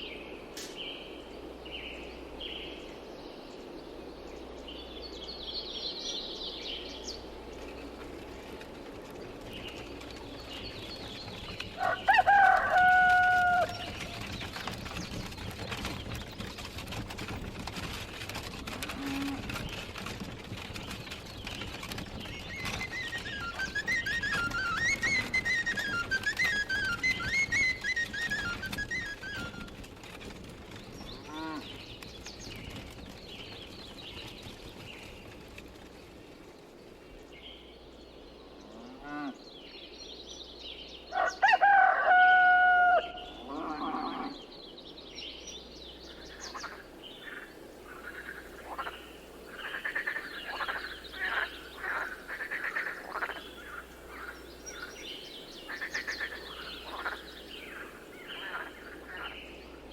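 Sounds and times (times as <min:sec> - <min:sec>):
small birds chirping: 0:00.0 - 0:41.4, 0:43.1 - 0:59.9
rooster crowing: 0:11.8 - 0:14.0, 0:41.1 - 0:43.3
hens clucking: 0:46.4 - 0:59.5.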